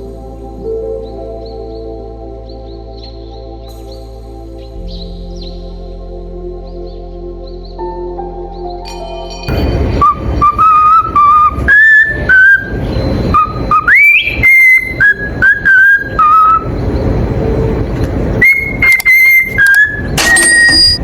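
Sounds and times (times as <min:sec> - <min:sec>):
rough background noise: 0:09.5 - 0:21.0
bird whistling clear notes: 0:10.0 - 0:16.7, 0:18.4 - 0:21.0.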